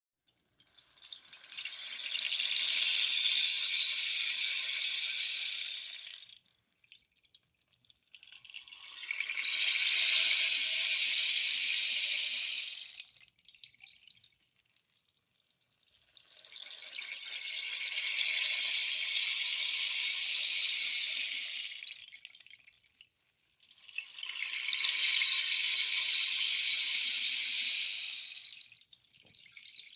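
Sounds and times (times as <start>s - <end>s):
rain stick pebbles pattering: 13.0s - 17.3s.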